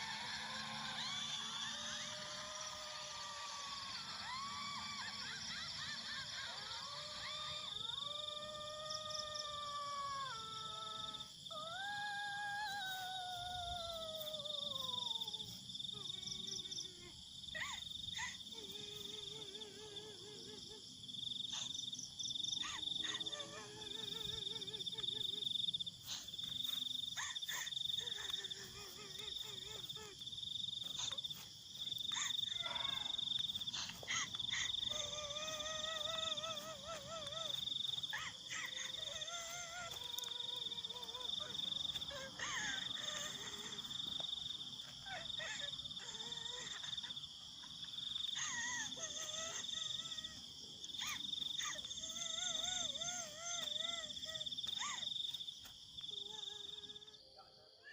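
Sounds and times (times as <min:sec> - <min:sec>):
insects chirring drone: 0:00.0 - 0:57.9
wavering pitched insect calls: 0:00.0 - 0:57.9.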